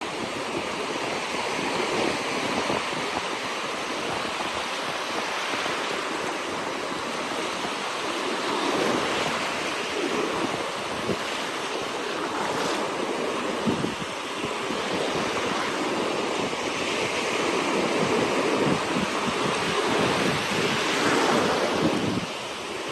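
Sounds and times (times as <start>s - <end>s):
ocean surf breaking on beach: 0.0s - 22.9s
wind on microphone: 0.0s - 22.9s.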